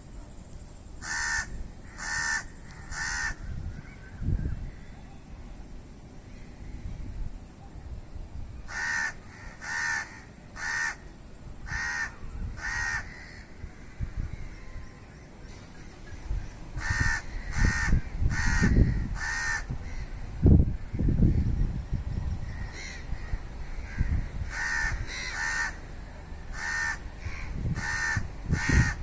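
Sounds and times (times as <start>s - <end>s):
crow cawing: 1.0s - 3.4s, 8.7s - 11.1s, 11.7s - 13.9s, 16.8s - 20.2s, 22.5s - 25.8s, 26.5s - 29.0s.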